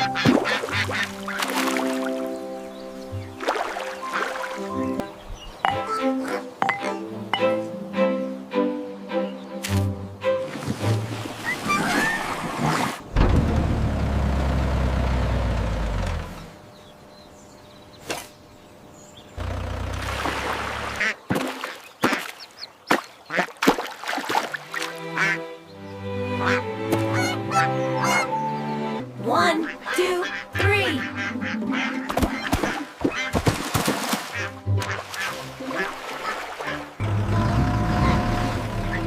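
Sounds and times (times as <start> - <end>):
duck quacks: 0.0 - 1.4, 23.3 - 23.5, 25.2 - 25.4, 26.4 - 28.3, 29.6 - 33.4, 34.3 - 36.9
cartoon music: 5.7 - 7.7, 26.5 - 32.0.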